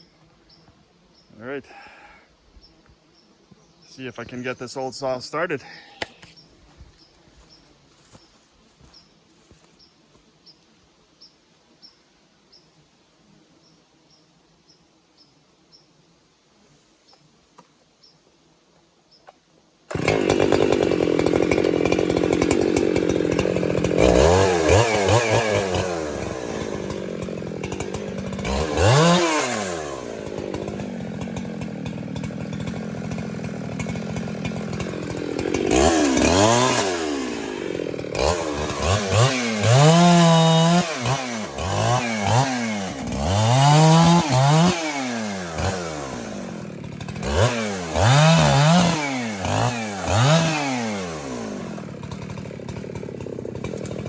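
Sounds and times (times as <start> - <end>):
chainsaw revving: 4.0 - 6.2, 19.9 - 54.0.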